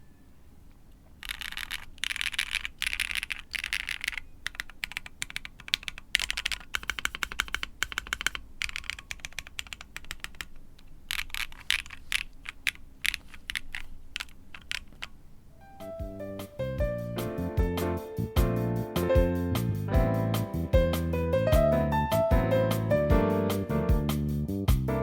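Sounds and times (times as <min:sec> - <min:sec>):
mechanical keyboard typing: 0:01.2 - 0:15.2
music: 0:15.6 - 0:25.0.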